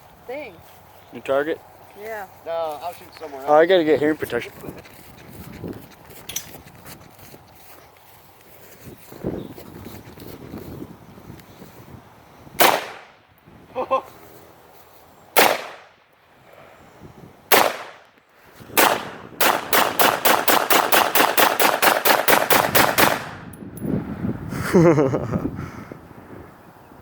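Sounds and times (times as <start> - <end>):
rifle shots: 12.6 - 13.1, 15.4 - 15.9, 17.5 - 18.1, 18.8 - 23.5.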